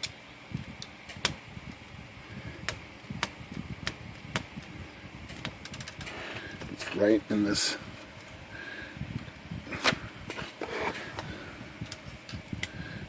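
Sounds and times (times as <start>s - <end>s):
soft handling noise: 9.7s - 12.7s.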